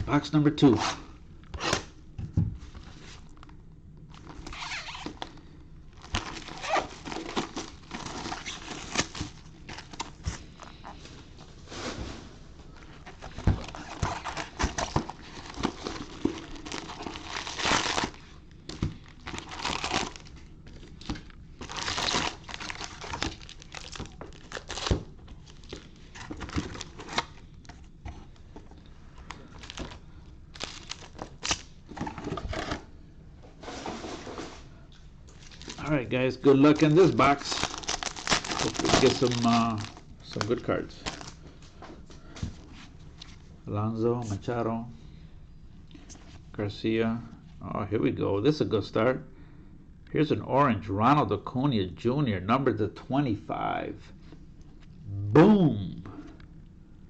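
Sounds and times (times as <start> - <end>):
plastic wrappers crinkling and tearing: 3.2 - 11.1, 12.8 - 32.8, 35.3 - 41.4.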